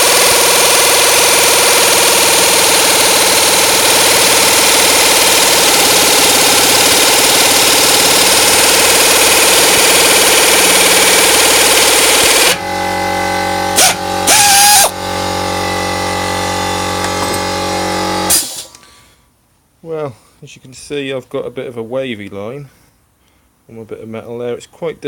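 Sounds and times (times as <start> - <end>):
pneumatic nibbler cutting sheet steel: 0.0 - 18.8
machine hum: 0.0 - 19.2.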